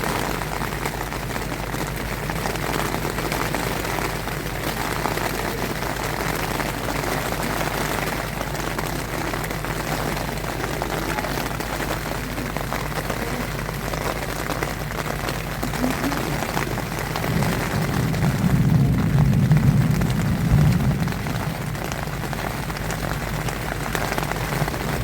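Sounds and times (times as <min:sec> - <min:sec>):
rain on a tent: 0:00.0 - 0:25.0
low rumble of thunder: 0:12.3 - 0:25.0.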